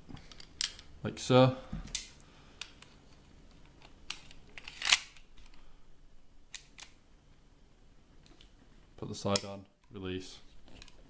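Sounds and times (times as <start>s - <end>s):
metal parts clicking: 3.7s - 5.6s
metallic click and scrape: 3.8s - 5.5s.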